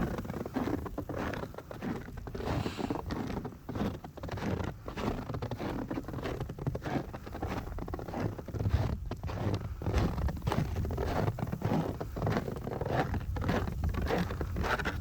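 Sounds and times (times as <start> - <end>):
footsteps crunching in snow: 0.0 - 15.0
wind buffeting microphone: 0.0 - 15.0.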